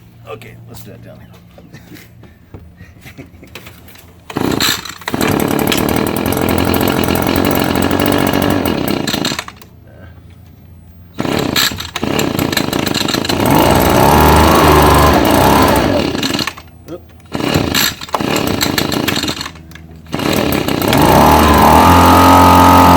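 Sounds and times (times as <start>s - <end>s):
leaf blower engine running: 3.1s - 9.6s, 11.2s - 22.9s.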